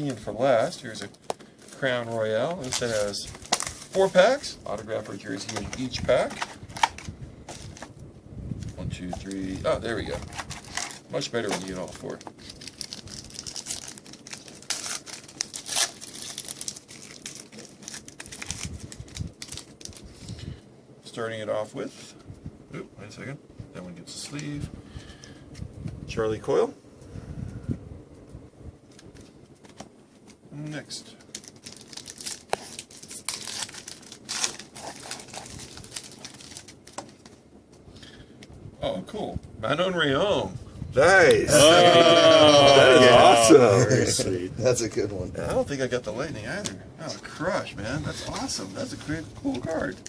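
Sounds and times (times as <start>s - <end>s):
card pack wrapper crinkling: 0.9s - 7.9s, 9.1s - 20.4s, 31.2s - 37.4s, 47.4s - 50.0s
wrapper tearing open: 2.5s - 4.5s, 9.3s - 20.4s, 31.2s - 37.3s.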